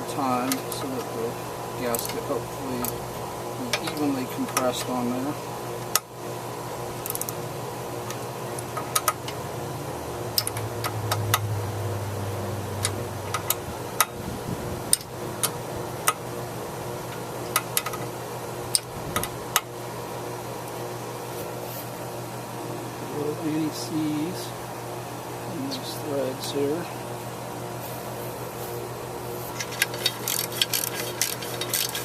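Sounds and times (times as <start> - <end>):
steady low hum: 0.0 - 32.0
ratchet clicking: 7.0 - 7.4, 10.4 - 11.5, 29.5 - 32.0.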